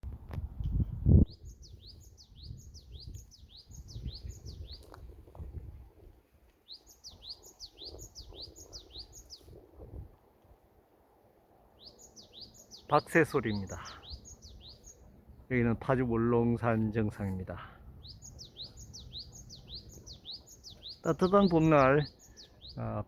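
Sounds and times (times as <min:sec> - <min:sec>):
bird whistling song: 0:01.3 - 0:04.9, 0:06.7 - 0:09.5, 0:11.8 - 0:15.0, 0:18.0 - 0:22.8.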